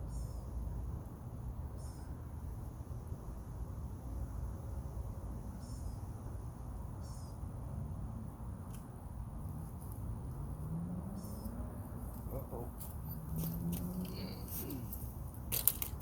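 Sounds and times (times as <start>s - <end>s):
steady low rumble: 0.0s - 16.0s
small bird chirping: 1.8s - 2.2s, 7.0s - 7.4s, 11.1s - 15.0s.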